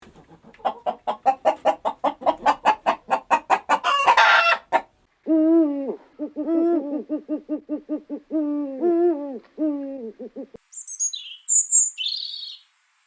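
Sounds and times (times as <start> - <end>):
chicken squawk: 0.0 - 4.9
chicken clucking rapidly: 0.0 - 5.0.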